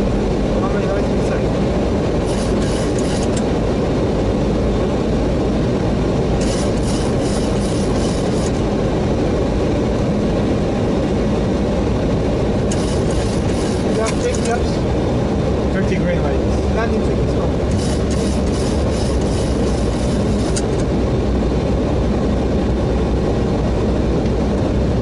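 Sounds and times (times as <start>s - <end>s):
aircraft engine noise: 0.0s - 25.0s
rushing airflow: 0.0s - 25.0s.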